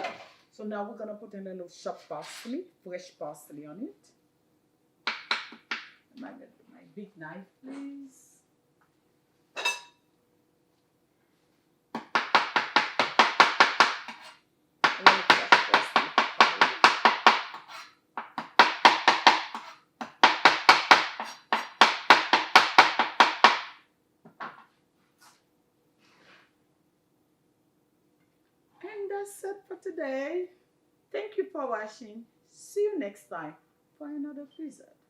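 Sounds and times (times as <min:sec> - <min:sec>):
knife chopping on cutting board: 0:05.1 - 0:06.0, 0:12.0 - 0:23.8.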